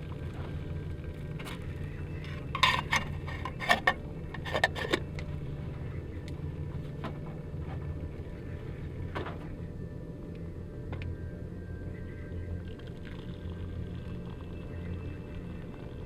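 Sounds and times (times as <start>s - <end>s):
camp dishes clinking and knocking: 2.2s - 5.1s.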